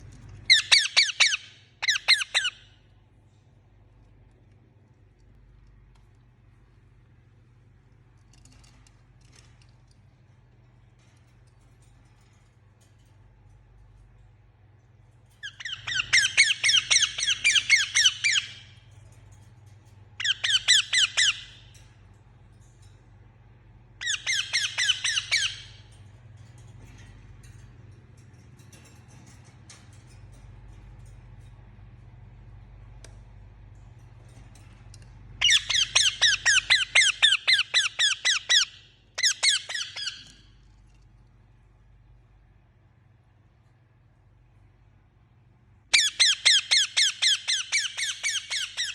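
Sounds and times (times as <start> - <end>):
parakeet squawking: 0.5 - 2.7, 15.4 - 18.7, 20.2 - 21.7, 24.0 - 25.8, 35.4 - 40.2, 45.9 - 48.9.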